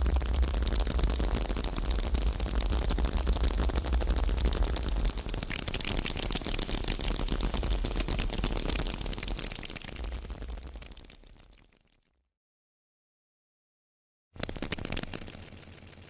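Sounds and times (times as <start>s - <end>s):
low rumble: 0.0s - 5.2s
dense crackle of small pops: 0.0s - 11.9s, 14.4s - 16.0s.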